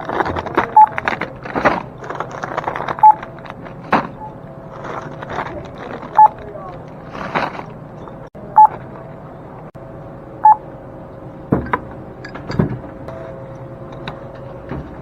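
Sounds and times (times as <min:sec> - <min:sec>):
steady hum: 0:00.0 - 0:15.0
barcode scanner beeping: 0:00.7 - 0:01.0, 0:03.0 - 0:03.4, 0:06.2 - 0:06.4
knocks and rattles: 0:11.5 - 0:13.2.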